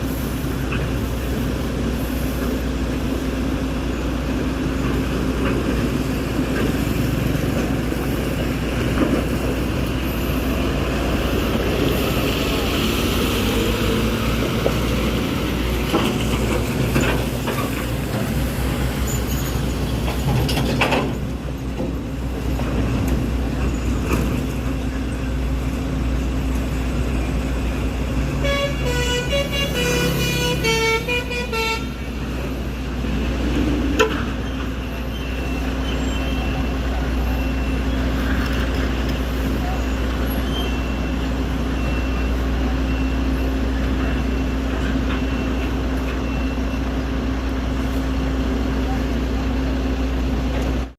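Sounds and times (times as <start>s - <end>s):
diesel truck engines rumbling: 0.0s - 50.9s
vehicle horn run of notes: 28.4s - 32.0s.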